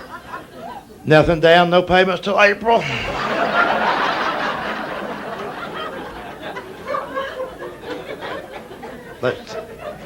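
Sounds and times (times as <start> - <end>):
audience laughing: 0.0 - 1.0, 2.8 - 10.0.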